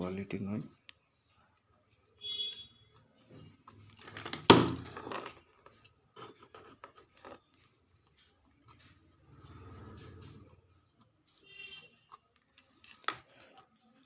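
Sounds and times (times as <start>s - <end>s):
scraping on circuit board: 8.6s - 12.2s.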